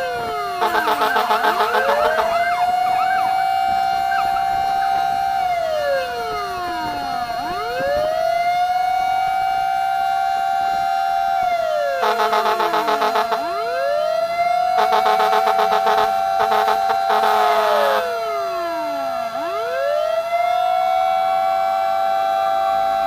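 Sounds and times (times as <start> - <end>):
fire truck siren wailing: 0.0 - 23.0
rapid pulsing siren: 0.0 - 23.0.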